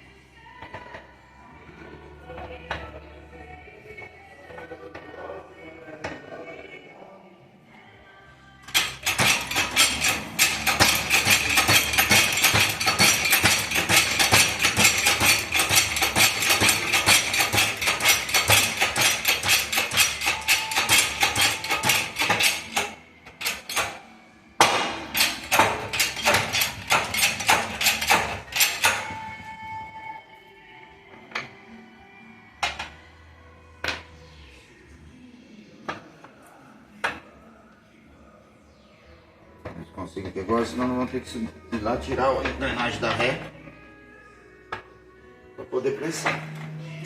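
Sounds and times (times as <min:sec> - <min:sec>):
hammer striking metal: 0:08.7 - 0:24.0, 0:24.6 - 0:29.3.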